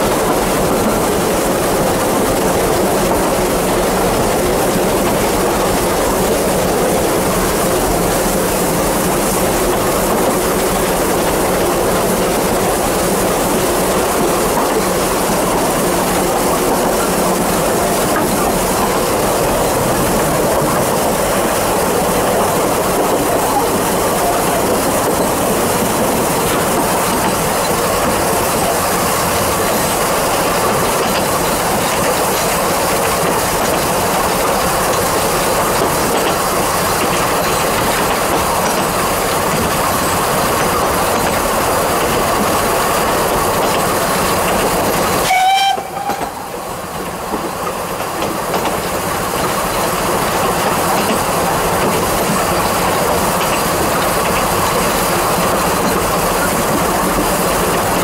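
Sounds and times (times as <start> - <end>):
wheels rattling on rail: 0.0 - 58.0
steam train whistle: 45.2 - 46.6.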